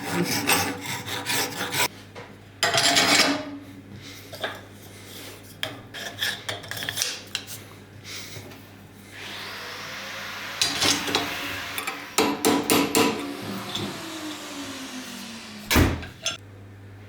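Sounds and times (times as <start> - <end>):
file scraping across wood: 0.0 - 1.9.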